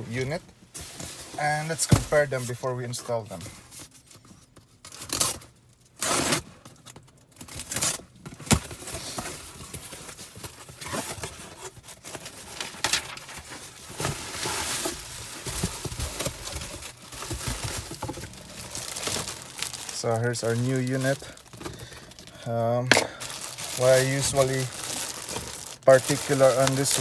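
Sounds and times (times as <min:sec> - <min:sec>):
packaging rustling: 0:07.4 - 0:27.0.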